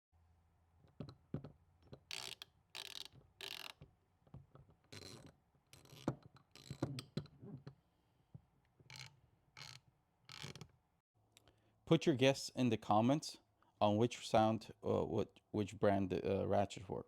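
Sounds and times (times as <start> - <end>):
ratchet wrenches clicking: 2.1 - 3.8.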